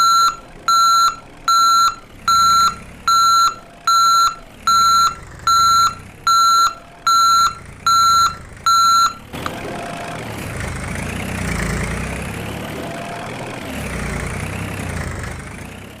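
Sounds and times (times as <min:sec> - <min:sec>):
toy reversing beeps: 0:00.0 - 0:09.2.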